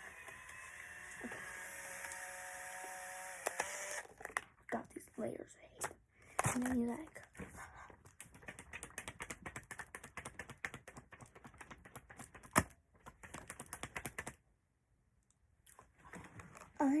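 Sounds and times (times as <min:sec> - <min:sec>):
clicking and tapping of small objects: 0:05.8 - 0:14.4.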